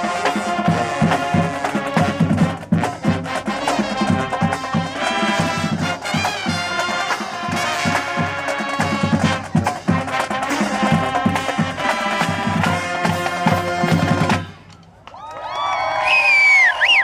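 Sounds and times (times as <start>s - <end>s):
marching band playing: 0.0s - 15.1s
crowd cheering and whooping: 14.8s - 17.0s.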